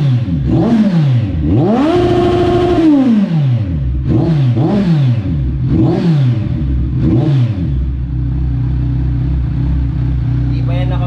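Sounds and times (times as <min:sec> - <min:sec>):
motorcycle engine revving: 0:00.0 - 0:11.0
motorcycle engine idling: 0:03.7 - 0:11.0.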